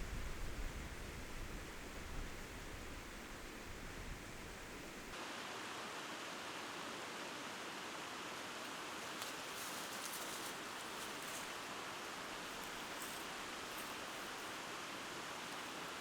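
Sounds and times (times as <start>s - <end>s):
steady rushing outdoor noise: 1.0s - 16.0s
faint crackling rustles: 8.6s - 16.0s.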